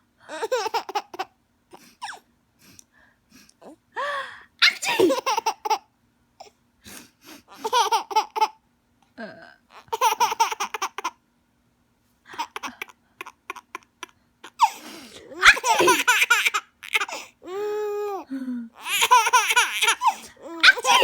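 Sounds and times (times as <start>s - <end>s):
baby laughing: 0.3s - 1.3s, 4.6s - 5.9s, 7.5s - 8.6s, 9.8s - 11.2s, 12.3s - 18.2s, 18.8s - 21.0s.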